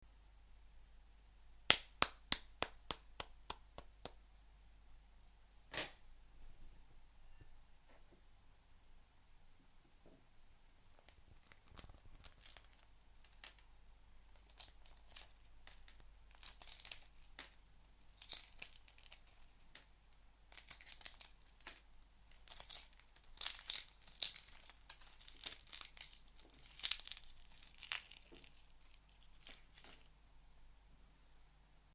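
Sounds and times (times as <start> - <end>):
eggshell crackling: 10.8 - 30.3.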